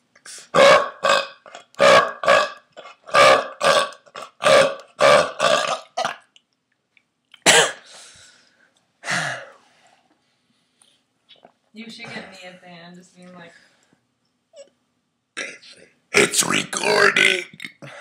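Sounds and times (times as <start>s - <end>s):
man burping: 0.5s - 6.3s, 15.4s - 18.0s.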